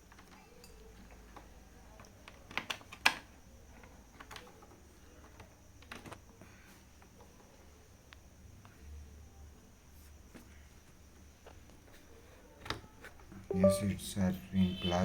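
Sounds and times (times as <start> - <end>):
keyboard handling clicks and taps: 13.5 - 13.8.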